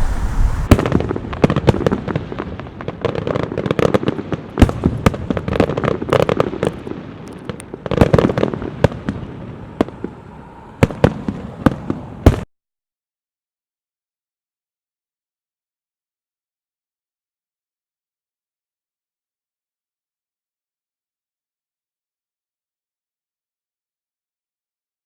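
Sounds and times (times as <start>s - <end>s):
fireworks bangs and pops: 0.0s - 10.2s, 10.8s - 12.5s.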